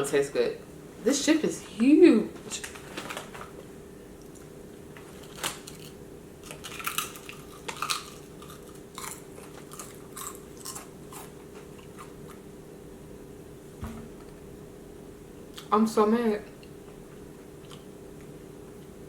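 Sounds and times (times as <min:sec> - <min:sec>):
potato chip crunching: 0:05.2 - 0:12.4.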